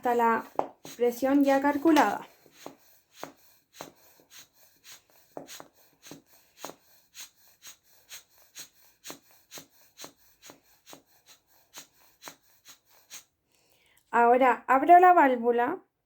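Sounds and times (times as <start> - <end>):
inflation bulb puffing air: 0.0 - 13.4.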